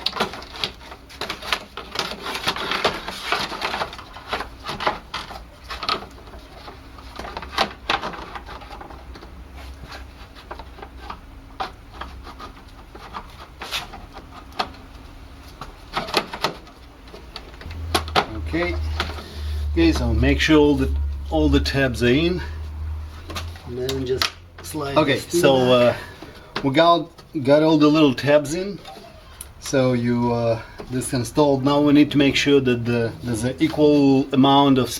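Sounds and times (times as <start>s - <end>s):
plastic clicks knocks and scraping: 0.0s - 19.2s.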